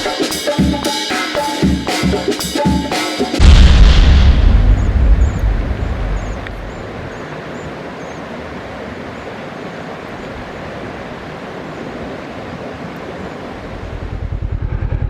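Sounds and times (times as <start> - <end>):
steady rushing noise: 2.3 - 7.2.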